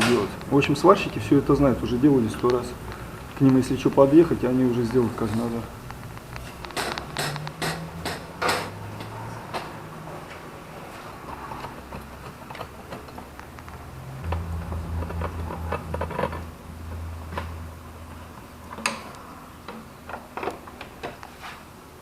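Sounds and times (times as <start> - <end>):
low hum: 13.3 - 20.4.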